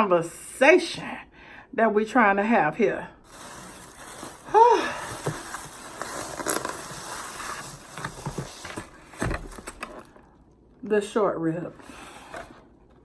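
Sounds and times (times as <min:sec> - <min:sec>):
food packaging rustling and crackling: 0:03.2 - 0:10.4, 0:11.8 - 0:13.0.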